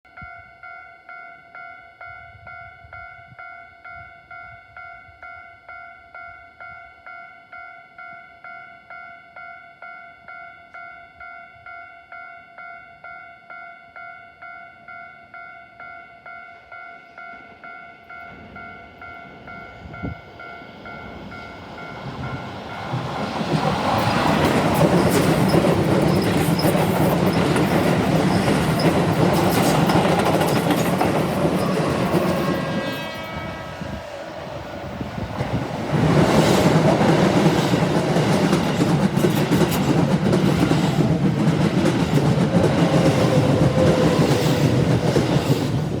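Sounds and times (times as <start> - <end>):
train wheels clattering on rails: 17.3 - 33.1, 34.0 - 46.0.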